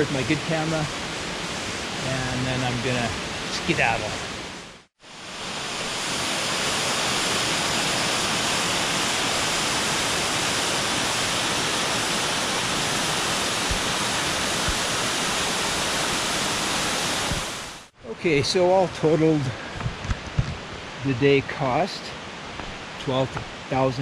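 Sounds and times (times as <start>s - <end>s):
waterfall rushing: 0.0s - 4.5s, 5.1s - 17.9s.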